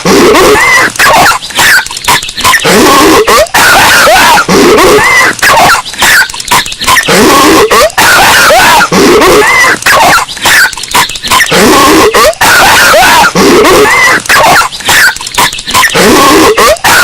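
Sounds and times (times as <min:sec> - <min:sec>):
distorted cartoon voice coughing: 0:00.0 - 0:17.0.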